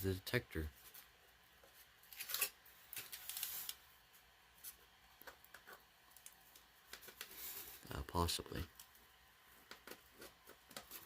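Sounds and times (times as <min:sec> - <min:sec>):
cardboard packaging rustling: 0:02.1 - 0:03.8.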